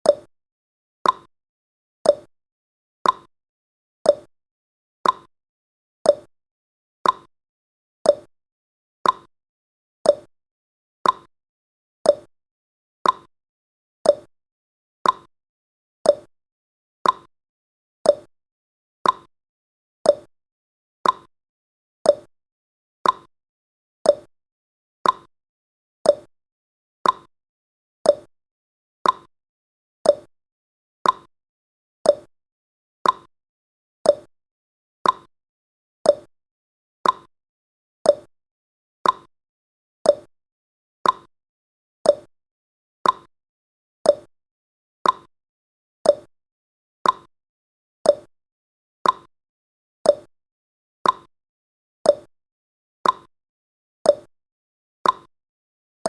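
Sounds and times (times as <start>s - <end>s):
clock ticking: 37.0s - 37.3s, 41.0s - 41.3s, 43.0s - 43.3s, 49.0s - 49.3s.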